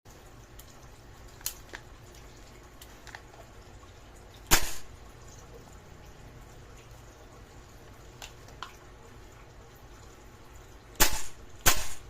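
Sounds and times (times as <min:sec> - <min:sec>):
loud sharp crack: 0:04.5 - 0:04.9, 0:11.0 - 0:12.0.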